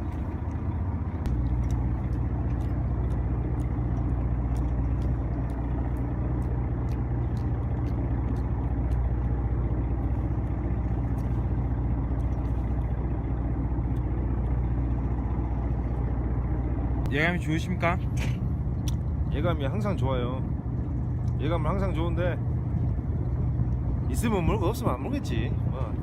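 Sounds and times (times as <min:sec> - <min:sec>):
boat engine humming: 0:00.0 - 0:26.0.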